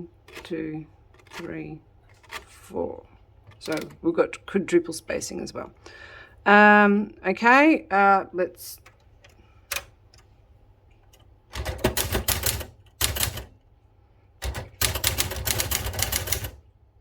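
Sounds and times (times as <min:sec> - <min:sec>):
typewriter keystrokes clacking: 0:01.2 - 0:01.5, 0:11.5 - 0:13.5, 0:14.4 - 0:16.6.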